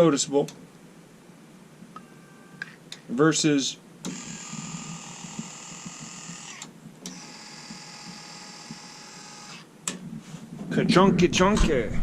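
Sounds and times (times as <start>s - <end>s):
actuator motor whining: 4.0s - 9.7s.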